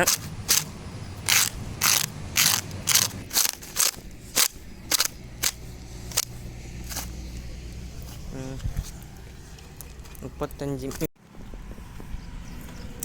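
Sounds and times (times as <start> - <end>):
hand tool rasping clicks: 0.0 - 7.1.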